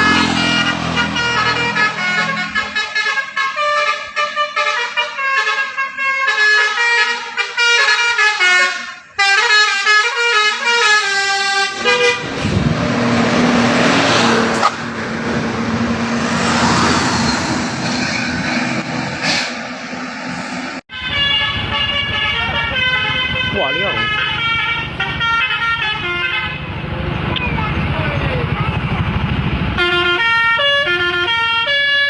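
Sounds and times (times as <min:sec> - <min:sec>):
musical bus horn tune: 0:00.0 - 0:12.7, 0:20.9 - 0:26.8, 0:29.8 - 0:32.0
loud rushing noise: 0:11.8 - 0:20.8.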